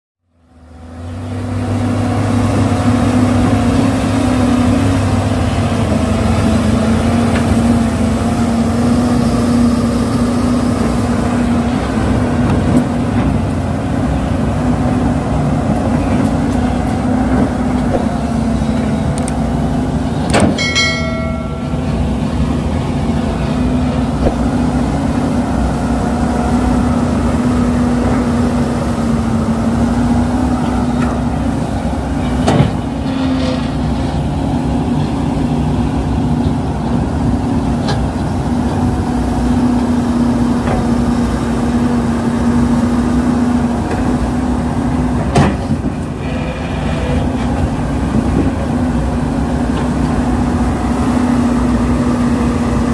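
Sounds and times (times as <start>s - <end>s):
heavy diesel engines running: 0.3s - 52.9s
sharp metallic clang: 20.3s - 22.2s.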